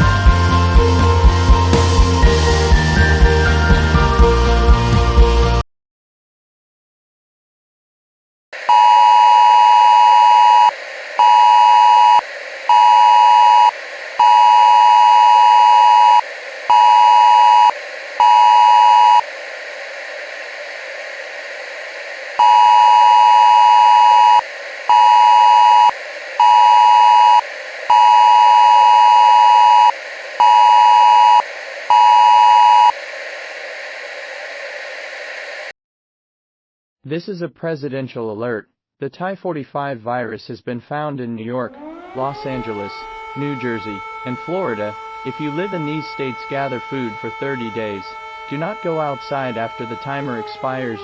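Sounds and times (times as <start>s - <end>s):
static hiss: 8.6s - 35.7s, 41.8s - 51.0s.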